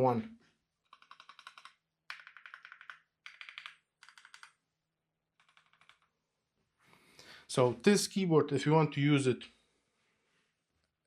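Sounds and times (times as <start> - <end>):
mechanical keyboard typing: 0.8 - 4.6, 5.4 - 6.1.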